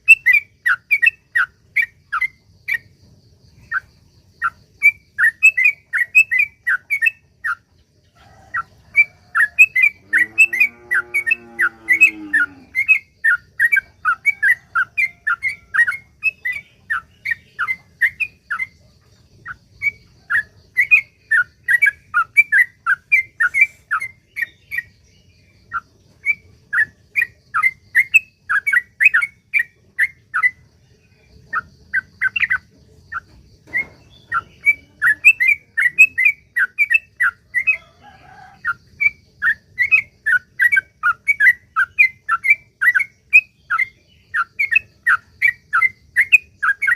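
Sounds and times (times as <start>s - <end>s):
bird chirping song: 0.0s - 46.9s.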